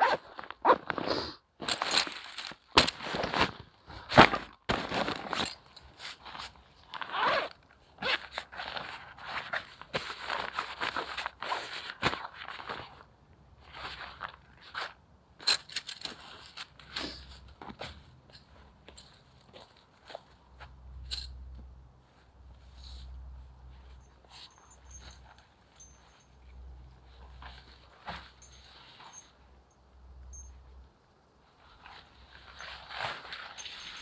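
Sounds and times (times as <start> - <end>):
rustling and crunching: 31.8 - 34.0.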